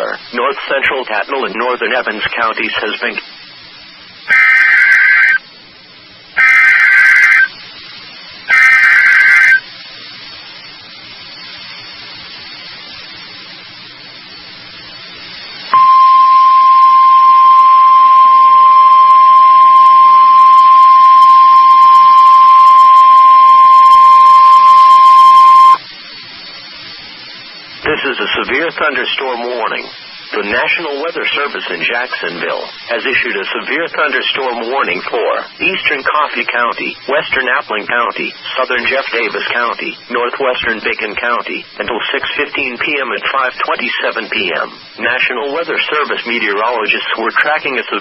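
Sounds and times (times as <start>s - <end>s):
faint radio hiss: 0.0s - 48.0s
steady warning alarm tone: 4.3s - 5.4s, 6.4s - 7.5s, 8.5s - 9.6s, 15.7s - 25.8s
digital data bursts: 4.3s - 5.5s, 6.4s - 7.6s, 8.5s - 9.7s, 15.7s - 25.8s.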